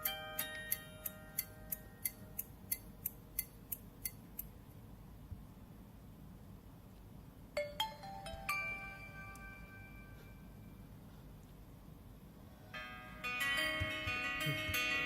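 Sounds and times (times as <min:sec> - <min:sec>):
phone chiming ringtone: 0:07.6 - 0:10.8, 0:12.8 - 0:15.0.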